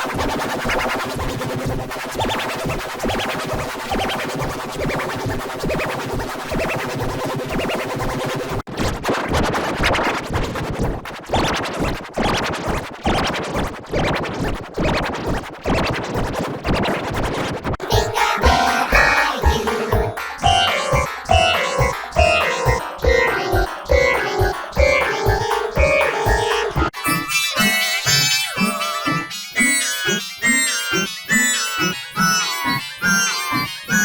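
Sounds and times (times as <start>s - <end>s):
electronic music with chopped samples: 17.8s - 34.0s.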